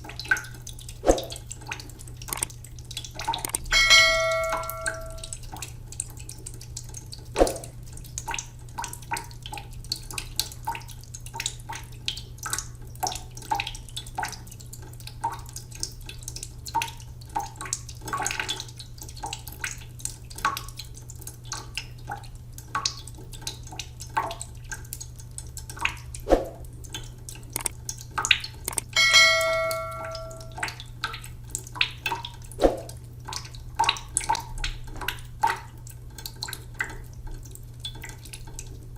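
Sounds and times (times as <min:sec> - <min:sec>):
water dripping and plopping: 0:00.0 - 0:38.9
bell-like chime: 0:03.7 - 0:05.2, 0:29.0 - 0:30.6.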